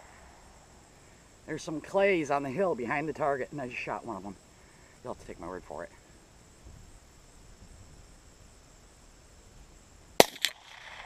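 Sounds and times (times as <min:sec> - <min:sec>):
crickets droning: 0:00.0 - 0:11.0
wind rumble on microphone: 0:06.5 - 0:08.8.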